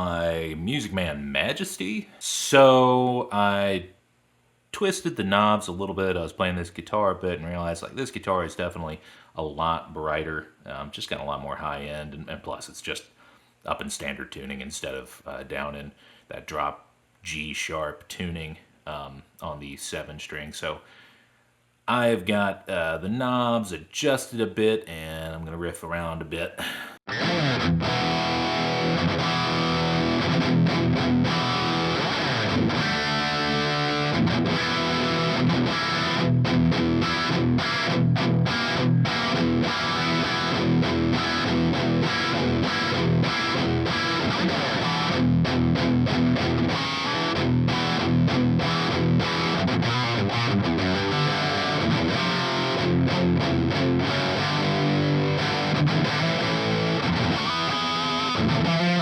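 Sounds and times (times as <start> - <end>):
distorted electric guitar riffing: 27.1 - 59.0.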